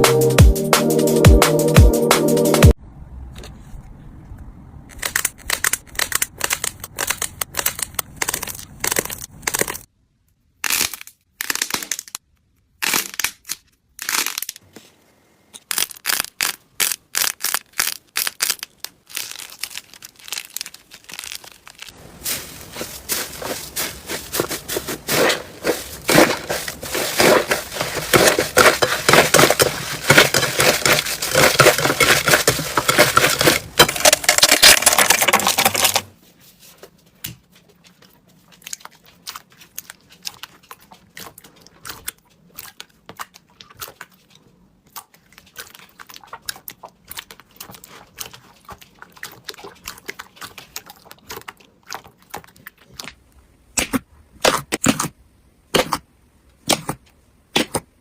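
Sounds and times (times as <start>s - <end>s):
slime squeezed crackling and squelching: 15.6s - 22.0s, 22.6s - 36.0s, 37.8s - 53.2s.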